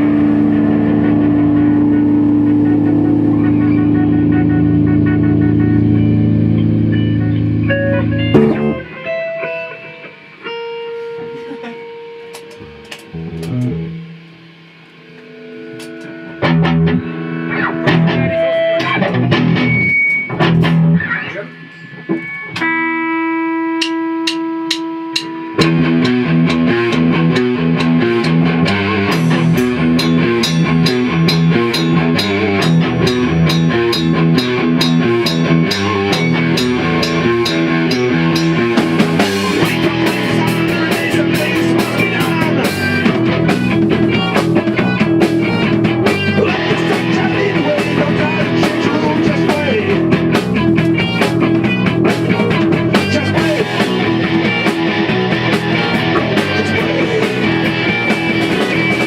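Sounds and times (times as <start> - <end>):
bass guitar: 0.0 - 59.0
electric guitar: 0.0 - 59.0
rock band playing live: 0.0 - 59.0
drum kit steady beat: 8.3 - 9.3, 22.0 - 59.0.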